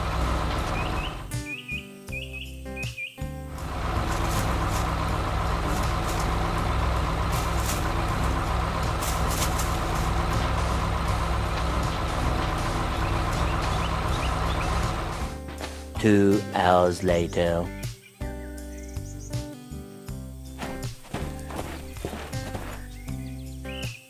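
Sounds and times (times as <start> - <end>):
diesel engine running under load: 0.0 - 1.4, 3.5 - 16.2, 20.6 - 23.4.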